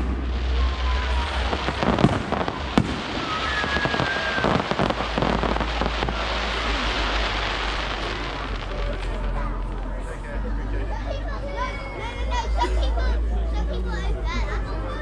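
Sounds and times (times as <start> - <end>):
firework whistling: 0.0 - 9.3
firework bangs: 0.0 - 9.4
fireworks crackling: 0.0 - 10.5.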